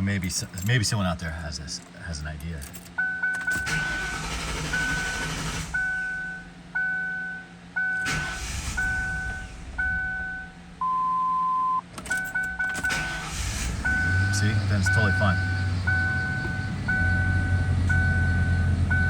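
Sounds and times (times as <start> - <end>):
car engine running: 2.6 - 6.8, 8.0 - 10.9, 11.9 - 19.0
car warning chime dinging: 2.9 - 19.0
starter motor cranking: 3.4 - 6.2, 12.0 - 19.0.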